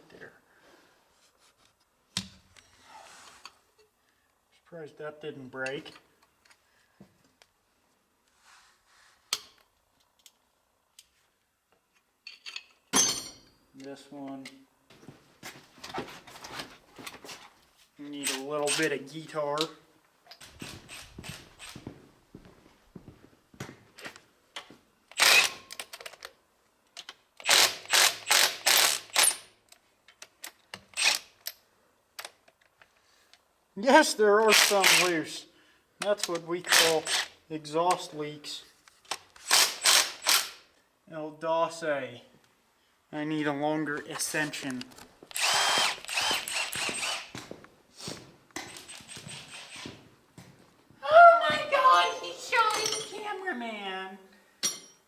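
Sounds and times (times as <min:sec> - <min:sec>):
metal tools clinking: 0:12.2 - 0:13.6, 0:52.0 - 0:53.3, 0:54.6 - 0:55.0
metal hand tools clattering: 0:52.6 - 0:53.2.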